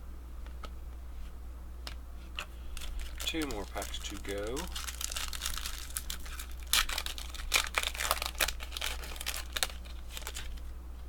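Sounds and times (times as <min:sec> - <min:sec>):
foil wrapper tearing and crinkling: 0:02.8 - 0:10.6.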